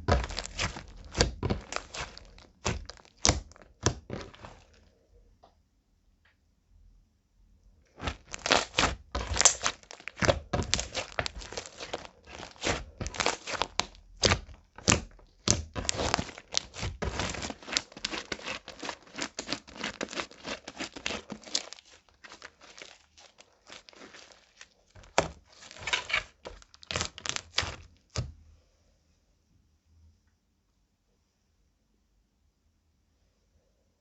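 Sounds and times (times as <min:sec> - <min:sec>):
slime sticky clicks and crackles: 0:00.1 - 0:04.6, 0:08.0 - 0:27.9.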